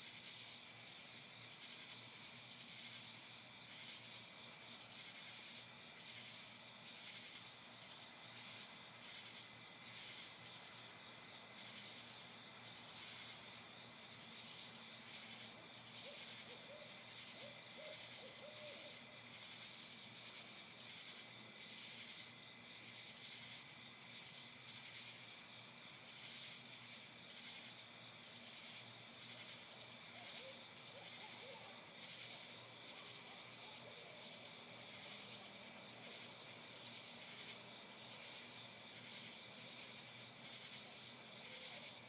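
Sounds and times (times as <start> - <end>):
night insects chirring: 0.0 - 42.0
owl hooting faintly: 16.0 - 19.0, 30.2 - 31.8.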